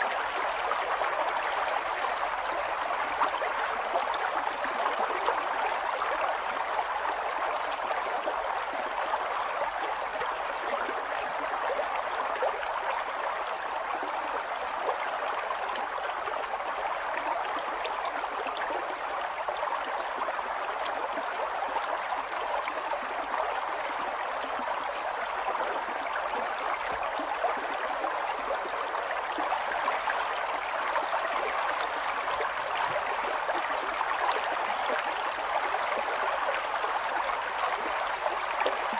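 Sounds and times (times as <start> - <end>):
flowing water with splashes: 0.0 - 38.9.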